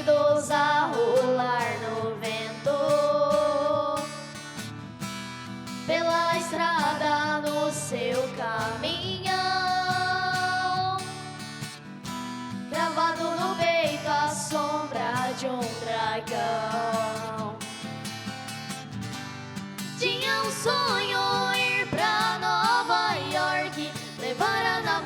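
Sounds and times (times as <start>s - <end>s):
boys singing a duet: 0.0s - 4.2s, 5.9s - 11.4s, 12.8s - 17.5s, 20.0s - 25.0s
acoustic guitar: 0.0s - 25.0s.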